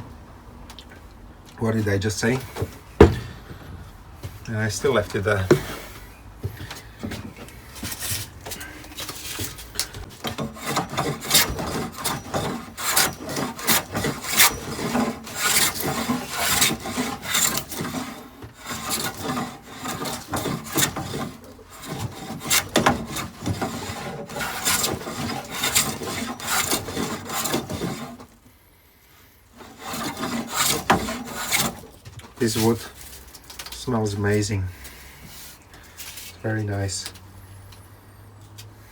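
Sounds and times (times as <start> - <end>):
hand plane shaving wood: 9.1 - 28.4, 29.5 - 32.8.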